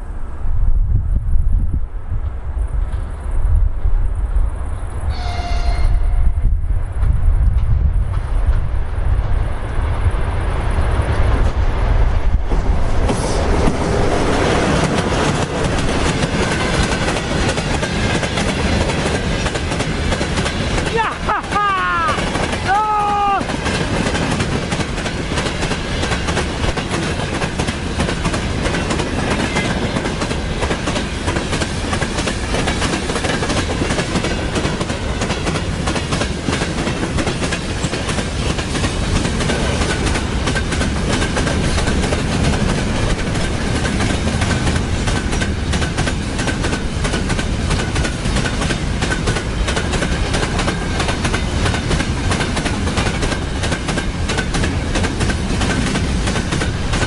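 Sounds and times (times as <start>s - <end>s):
train wheels clattering over rails: 10.9s - 21.6s, 22.2s - 57.0s.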